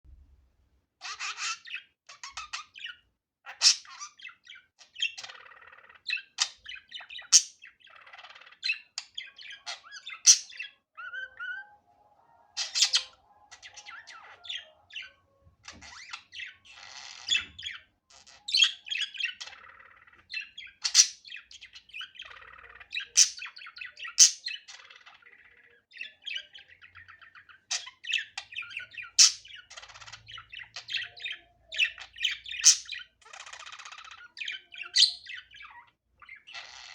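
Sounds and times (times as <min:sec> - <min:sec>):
budgerigar chattering and warbling: 0:01.0 - 0:11.8, 0:12.4 - 0:36.9
budgerigar squawks: 0:12.6 - 0:15.1.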